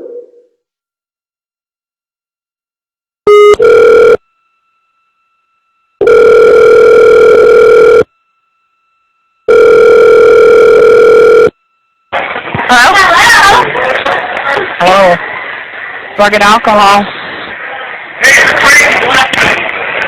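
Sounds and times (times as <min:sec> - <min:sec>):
telephone ring tones: 0:03.3 - 0:12.1.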